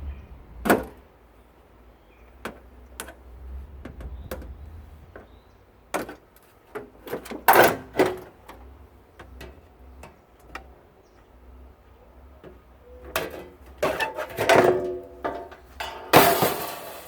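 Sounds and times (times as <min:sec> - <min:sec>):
metal clatter: 0:13.1 - 0:17.0.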